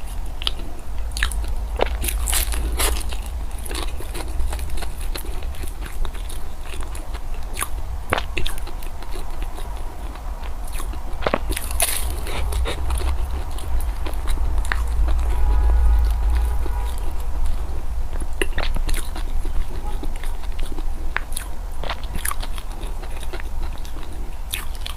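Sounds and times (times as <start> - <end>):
person biting and chewing food: 1.2 - 14.2.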